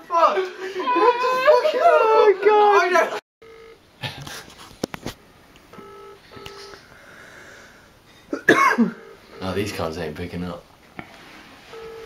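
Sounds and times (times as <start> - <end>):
telephone ringback tone: 3.4 - 3.8, 5.8 - 6.8, 8.9 - 9.8, 11.7 - 12.0.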